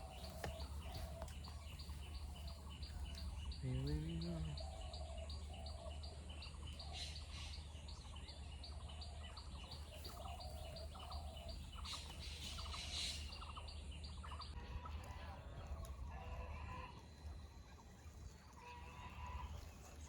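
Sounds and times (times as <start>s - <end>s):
lower bird calls: 0.0s - 8.0s.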